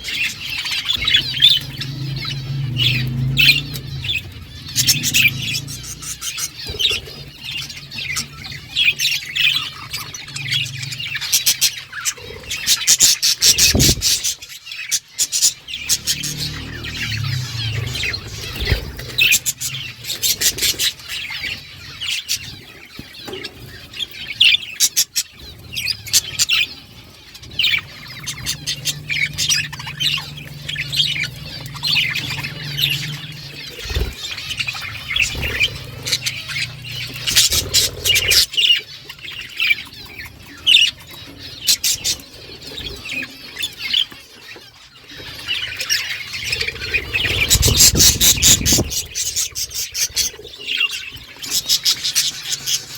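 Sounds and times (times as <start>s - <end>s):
budgerigars chirping and chattering: 0.0s - 52.9s
steady low hum: 0.8s - 12.8s, 25.9s - 38.5s.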